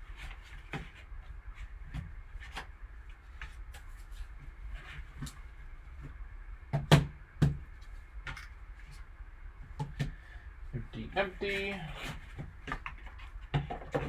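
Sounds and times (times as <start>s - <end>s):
light clicks and taps on packaging: 12.4s - 14.0s.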